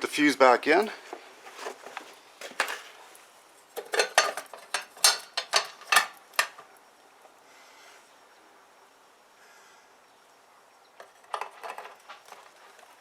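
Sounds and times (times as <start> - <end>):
fuses clicking into fuse box: 3.8 - 6.7.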